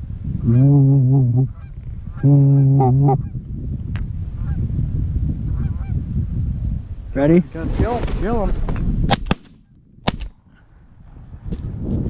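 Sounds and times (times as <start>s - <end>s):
goose call honks: 0.4s - 3.3s
geese clucking and honking: 1.4s - 3.4s.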